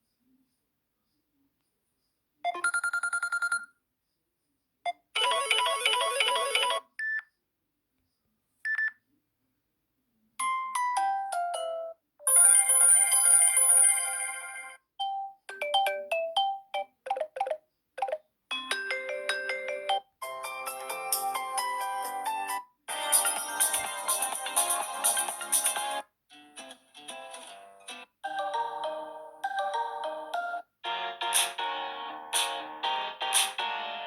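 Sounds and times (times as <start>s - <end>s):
phone ringtones: 2.5s - 3.8s, 5.2s - 6.8s.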